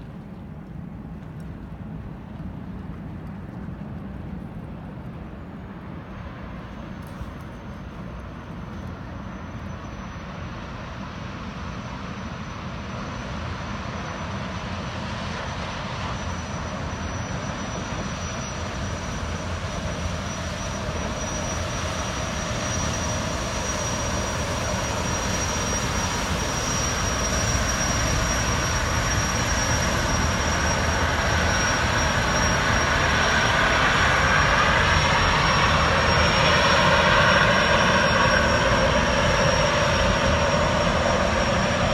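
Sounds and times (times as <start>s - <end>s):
gas turbines whining: 15.0s - 41.9s
rushing jet noise: 15.0s - 41.9s.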